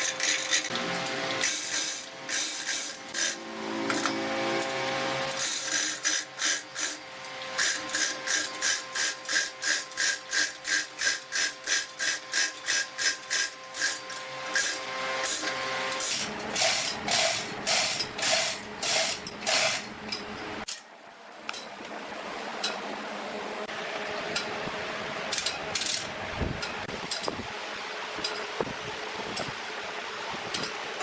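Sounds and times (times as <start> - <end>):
hand tool scraping wood: 7.6 - 19.8.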